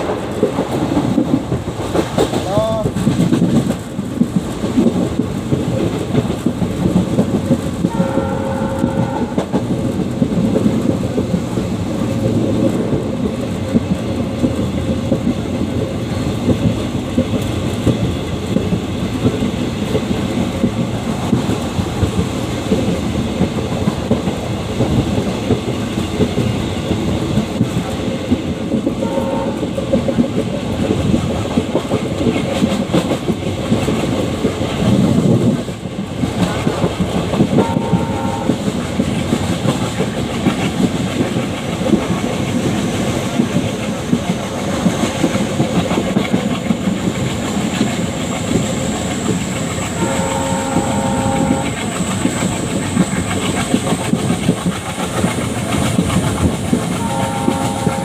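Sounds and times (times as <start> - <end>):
diesel locomotive engine chugging: 0.0 - 58.0
train wheels clattering over rail joints: 0.0 - 58.0
train horn: 7.8 - 9.7, 29.0 - 29.8, 37.5 - 38.8, 49.9 - 52.5, 56.9 - 58.0.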